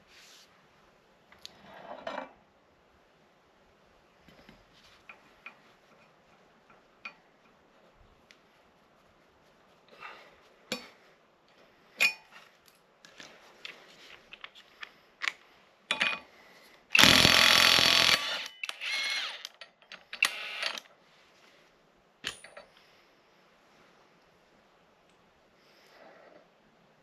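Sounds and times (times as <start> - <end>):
metal tools clinking: 12.0 - 12.4, 15.9 - 16.3
power tool burst: 17.0 - 19.5.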